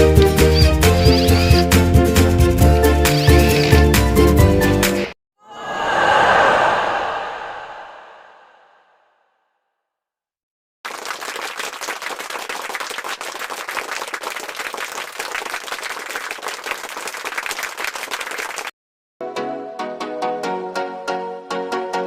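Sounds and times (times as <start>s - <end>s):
crowd applause: 10.9s - 18.7s.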